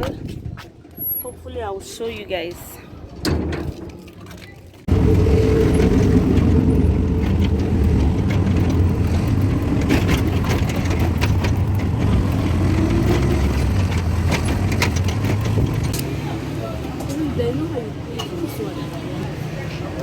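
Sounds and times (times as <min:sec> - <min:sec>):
vehicle engine rumbling: 0:00.0 - 0:20.0
rattles and clicks: 0:03.2 - 0:16.1.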